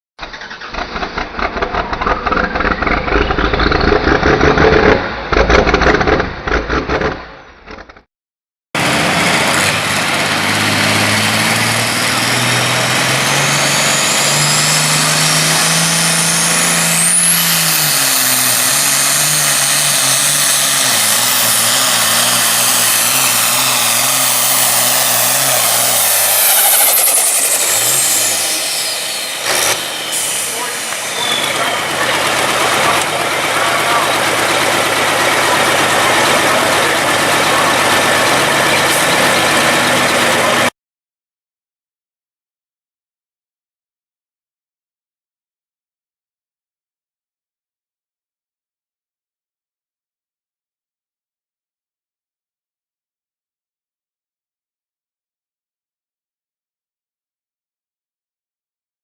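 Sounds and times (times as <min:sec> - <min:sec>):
engine revving: 0:00.2 - 0:08.0, 0:08.8 - 0:40.7
tractor engine under full load: 0:00.2 - 0:08.1, 0:08.8 - 0:40.7
turbo whistle: 0:22.9 - 0:32.2.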